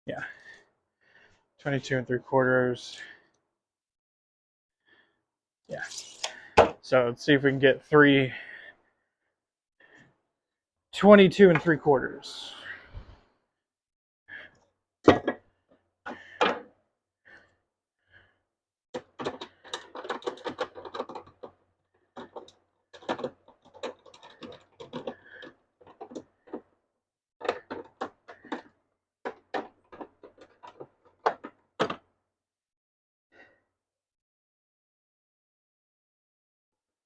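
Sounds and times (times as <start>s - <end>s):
wooden boards and tools clattering: 15.1s - 15.4s, 16.1s - 16.7s, 19.0s - 21.6s, 22.2s - 26.7s, 27.4s - 32.1s.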